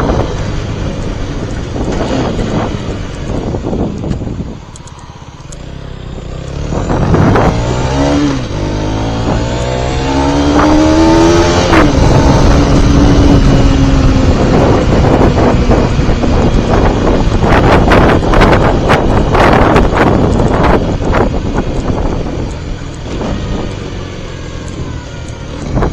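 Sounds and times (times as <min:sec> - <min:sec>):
motorcycle engine accelerating: 0:00.0 - 0:25.9
wind rushing over microphone: 0:00.0 - 0:25.9.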